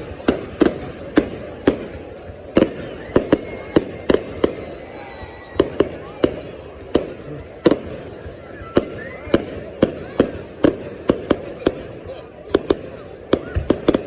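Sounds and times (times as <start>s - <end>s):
fireworks bangs: 0.0s - 14.0s
fireworks crackling: 0.0s - 14.0s
faint high whistle: 2.9s - 5.6s.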